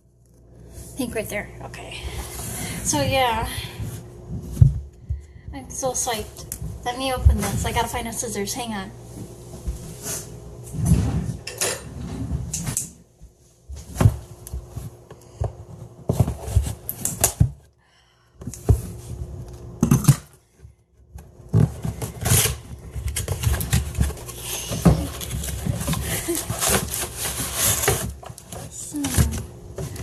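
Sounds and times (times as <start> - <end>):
rummaging through drawers: 21.6 - 30.0.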